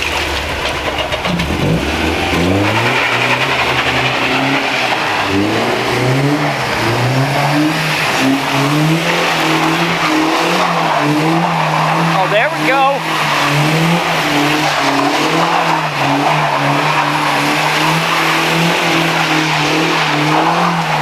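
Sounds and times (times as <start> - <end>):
car engine revving: 0.0 - 21.0.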